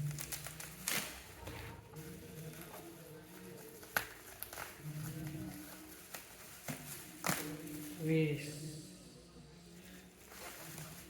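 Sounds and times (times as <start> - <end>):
packaging rustling: 0.0 - 8.0.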